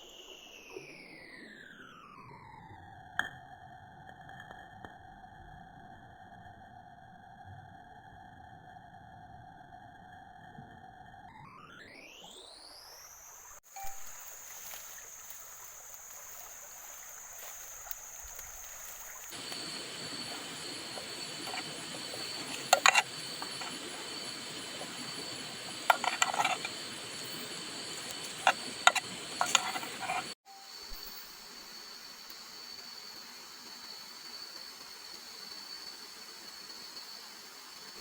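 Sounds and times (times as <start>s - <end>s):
rain and water hiss: 13.7s - 38.0s
sharp clicks and knocks: 19.4s - 30.4s.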